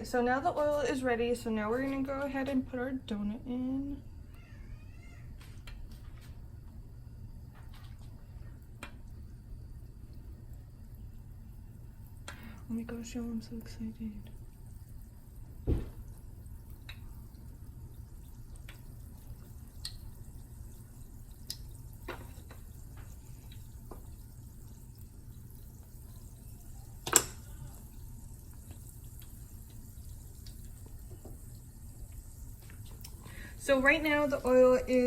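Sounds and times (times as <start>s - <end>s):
steady low hum: 0.0s - 35.0s
oil popping and crackling: 10.0s - 35.0s
loud sharp pop: 15.6s - 16.0s.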